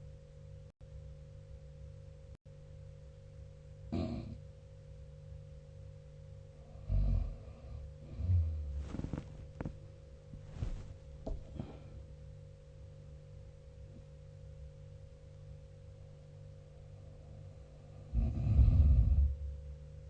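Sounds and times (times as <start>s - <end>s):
steady low room hum: 0.0s - 20.0s
person snoring: 3.9s - 4.4s, 6.6s - 9.7s, 17.0s - 19.4s.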